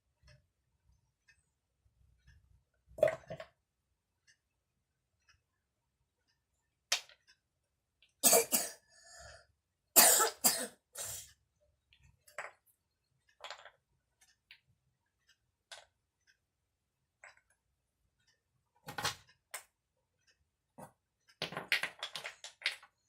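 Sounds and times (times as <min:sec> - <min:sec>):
child coughing: 0:08.2 - 0:08.9, 0:10.0 - 0:11.3.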